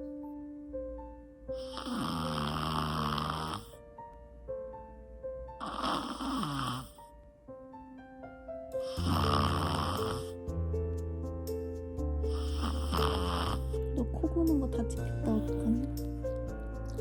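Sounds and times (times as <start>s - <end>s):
soft background music: 0.0s - 17.0s
dog snoring: 1.6s - 3.8s, 5.6s - 7.2s, 8.8s - 10.5s, 12.3s - 13.8s.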